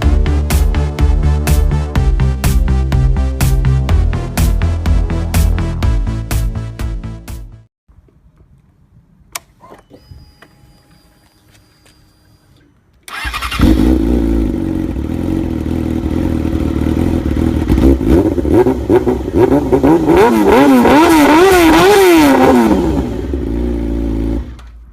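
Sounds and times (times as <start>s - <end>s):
scooter engine idling and revving: 13.1s - 24.9s.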